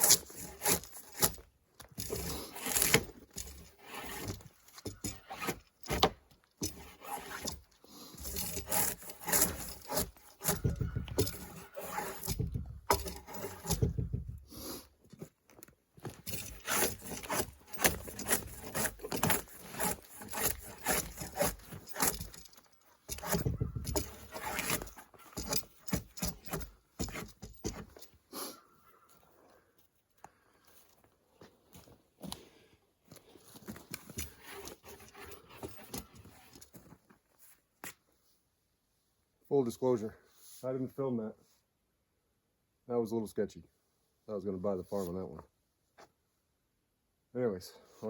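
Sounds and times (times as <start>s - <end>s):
scraping and rubbing on wood: 0.0s - 14.4s, 16.0s - 28.1s.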